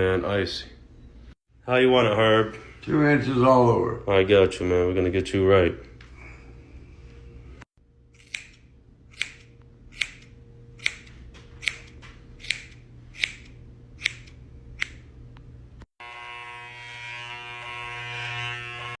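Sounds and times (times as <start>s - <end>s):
low steady hum: 0.0s - 19.0s
steady buzz with even tones: 16.0s - 19.0s.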